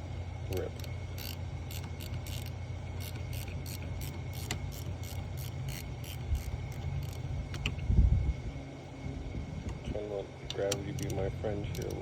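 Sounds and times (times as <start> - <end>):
ratchet wrench clicking: 0.8 - 7.7, 10.7 - 12.0.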